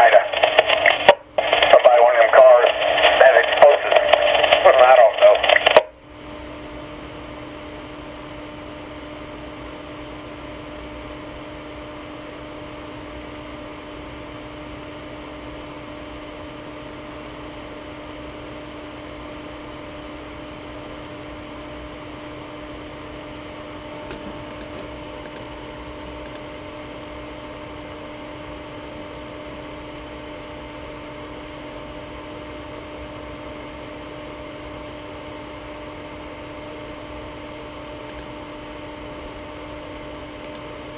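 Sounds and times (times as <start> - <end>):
electrical hum: 0.0 - 40.9
faint clicks: 38.1 - 38.3.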